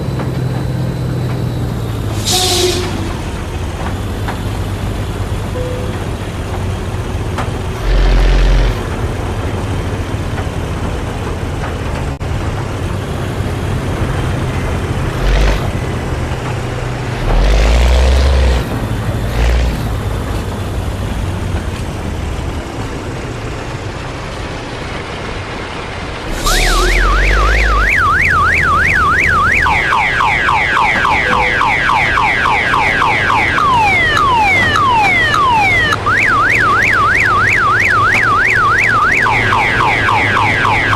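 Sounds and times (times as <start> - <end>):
truck engine surging: 0.0 - 40.9
electronic siren yelping: 26.3 - 40.9.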